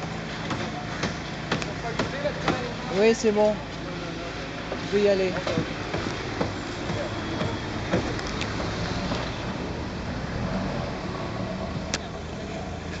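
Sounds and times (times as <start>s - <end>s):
engine running: 0.0s - 13.0s
street noise: 0.0s - 13.0s
sharp knocks: 5.4s - 8.8s.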